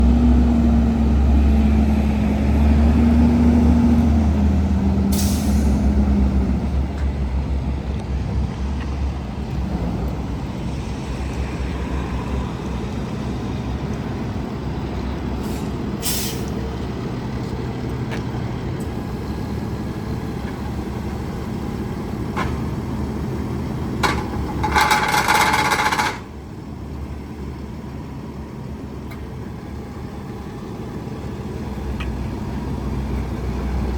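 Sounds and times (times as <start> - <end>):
diesel truck engine running: 0.0 - 33.9
short air hisses: 5.1 - 5.8, 15.4 - 16.5.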